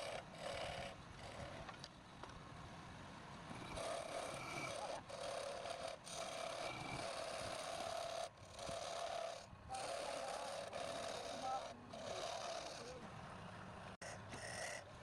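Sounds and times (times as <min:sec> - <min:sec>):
wood lathe cutting: 0:03.7 - 0:13.0.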